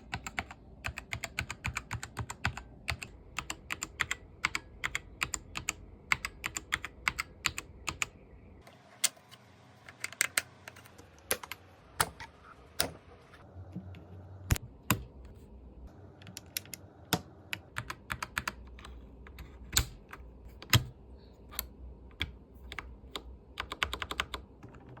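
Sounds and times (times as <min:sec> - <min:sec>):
mechanical keyboard typing: 0:00.0 - 0:08.1, 0:16.2 - 0:20.9, 0:21.5 - 0:25.0.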